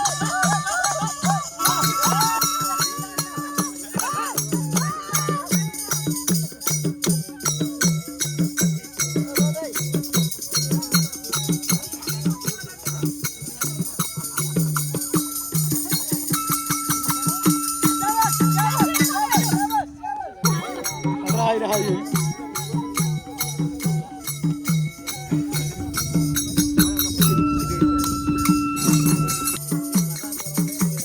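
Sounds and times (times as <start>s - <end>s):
rattling percussion beat: 0.0s - 31.0s
pulsing bass note: 25.3s - 29.6s.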